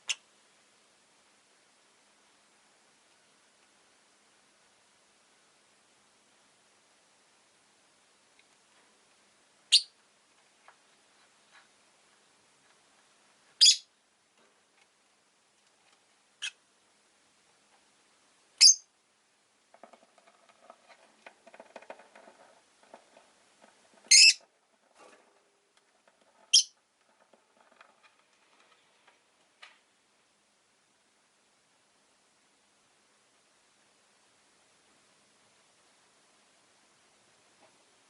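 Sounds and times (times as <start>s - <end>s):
faint crackling patter: 19.6s - 29.9s
bird giving shrill chirps: 24.1s - 24.4s.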